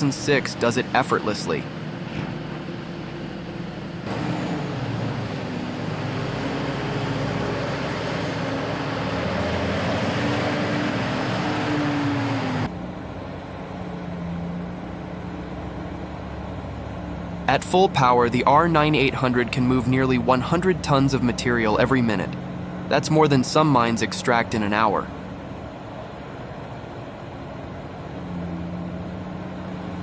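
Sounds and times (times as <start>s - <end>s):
heavy machine engine running: 0.0s - 30.0s.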